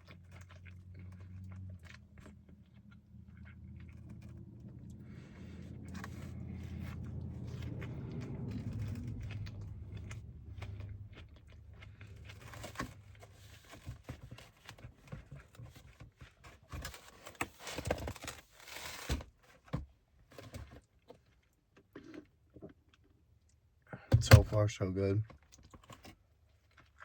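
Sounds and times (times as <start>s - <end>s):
person chewing: 0.0s - 13.7s
low hum: 3.0s - 13.3s.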